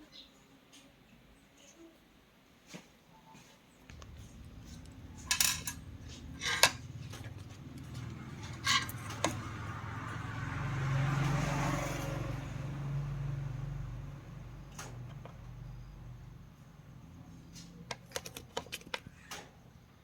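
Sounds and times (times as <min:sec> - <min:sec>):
steady low hum: 0:03.9 - 0:10.4
metal tools clinking: 0:04.3 - 0:09.4.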